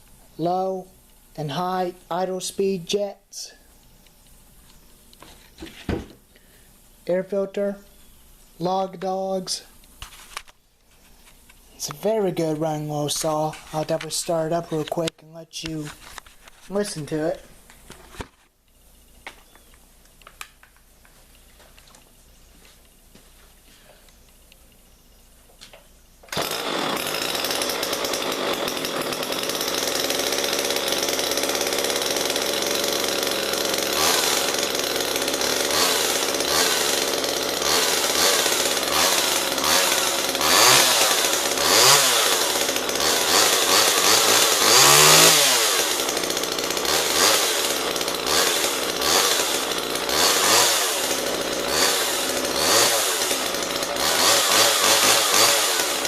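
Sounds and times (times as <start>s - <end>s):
chainsaw revving: 11.7s - 16.0s, 26.3s - 56.0s.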